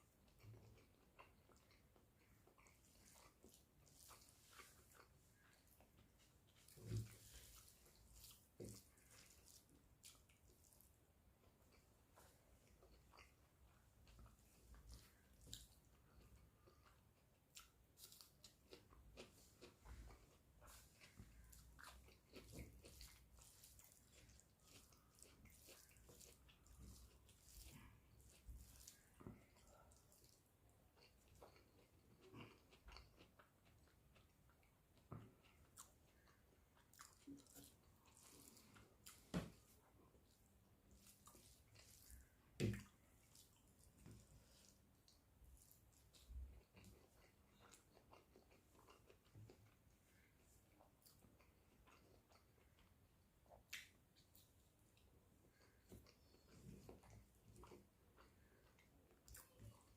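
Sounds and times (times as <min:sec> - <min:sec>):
chewing mouth clicks and smacks: 0:00.1 - 0:59.9
wet mouth clicks and smacks: 0:53.6 - 0:54.5.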